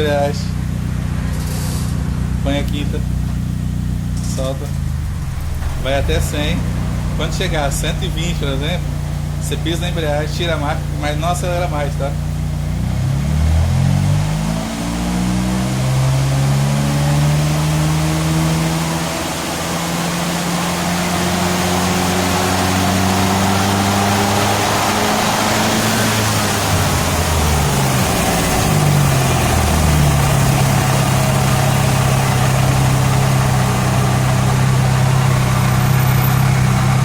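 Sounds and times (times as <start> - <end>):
car engine slowing to idle: 0.0 - 37.0
coasting wheel rushing: 4.0 - 12.0.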